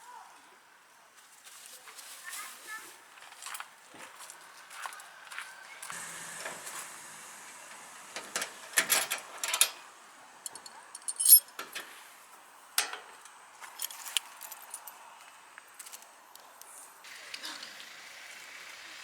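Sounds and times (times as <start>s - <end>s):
small metallic objects clinking: 10.4s - 11.9s.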